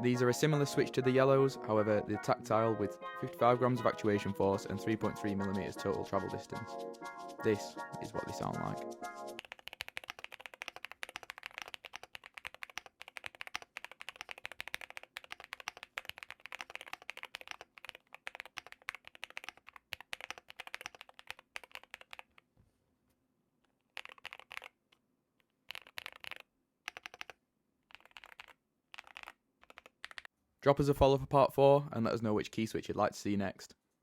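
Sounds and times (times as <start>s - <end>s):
mechanical keyboard typing: 9.4s - 22.4s, 23.9s - 24.8s, 25.6s - 30.3s.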